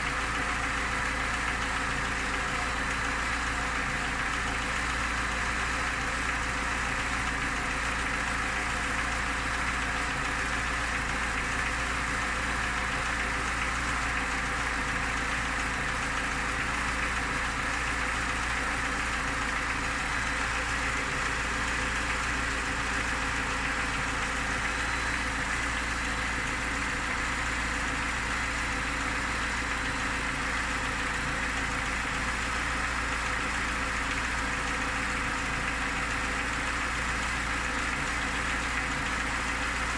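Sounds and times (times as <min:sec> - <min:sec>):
car engine idling with knock: 0:00.0 - 0:39.9.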